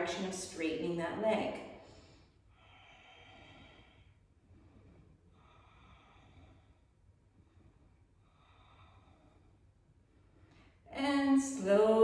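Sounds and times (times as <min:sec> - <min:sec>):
slow hissy yoga breathing: 0:01.7 - 0:10.9.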